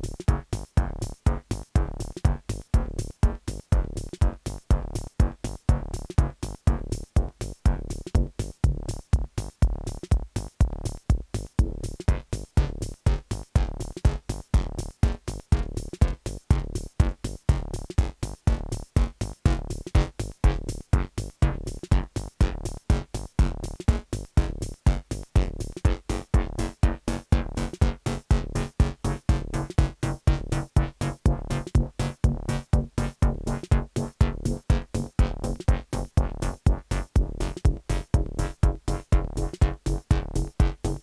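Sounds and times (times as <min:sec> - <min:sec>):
kick drums: 0:00.0 - 0:41.0
techno music: 0:00.0 - 0:41.0.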